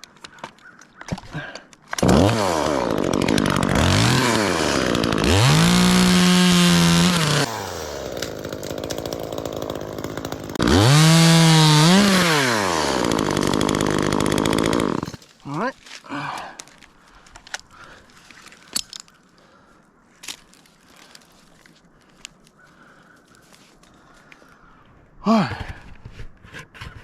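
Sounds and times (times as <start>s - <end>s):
chainsaw engine revving: 1.9s - 15.2s.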